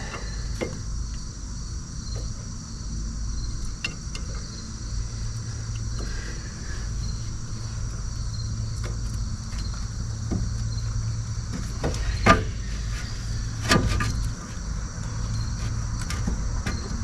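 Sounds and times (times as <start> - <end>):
insects chirring: 0.0 - 17.0
steady low hum: 0.0 - 17.0
metallic knocks and clicks of brake pads: 11.5 - 12.7, 16.0 - 17.0.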